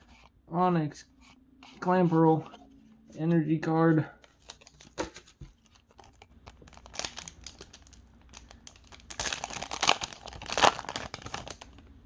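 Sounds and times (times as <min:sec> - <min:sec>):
foil wrapper crinkling and tearing: 0:05.6 - 0:11.9.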